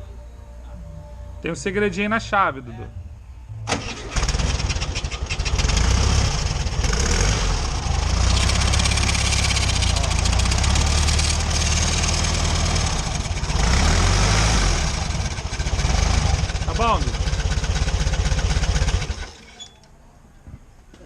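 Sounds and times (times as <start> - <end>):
car engine starting and running: 3.5 - 19.4.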